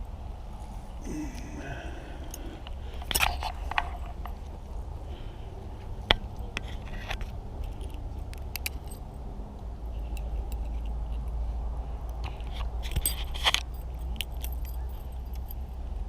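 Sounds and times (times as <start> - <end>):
steady low rumble: 0.0 - 12.2
small clicks and light rattles: 5.8 - 11.4, 12.0 - 15.8.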